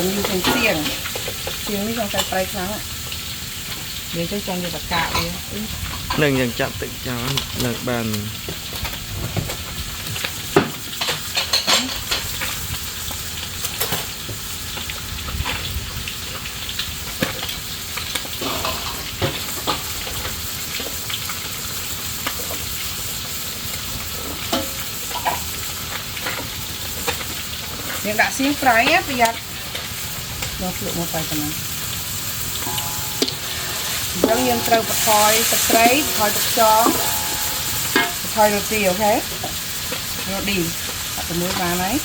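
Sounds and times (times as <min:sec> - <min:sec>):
food sizzling in a pan: 0:00.0 - 0:42.0
utensil scraping and clinking: 0:32.4 - 0:38.6.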